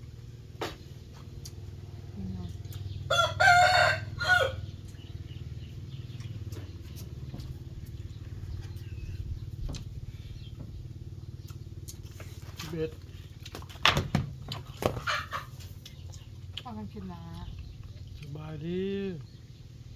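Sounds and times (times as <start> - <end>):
steady low hum: 0.0 - 14.8
rooster crowing: 3.1 - 4.8.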